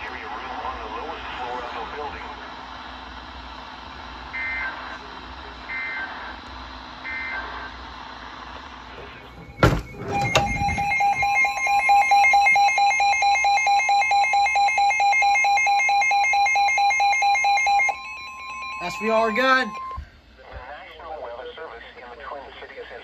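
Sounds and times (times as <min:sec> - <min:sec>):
rapidly pulsing electronic alarm: 0:00.0 - 0:20.4
steady high tone: 0:09.0 - 0:20.0
short beeps: 0:09.4 - 0:15.4, 0:16.0 - 0:20.0.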